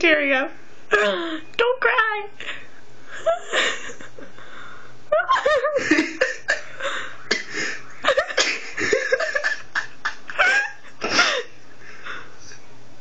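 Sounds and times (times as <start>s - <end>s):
person giggling: 5.1s - 12.3s.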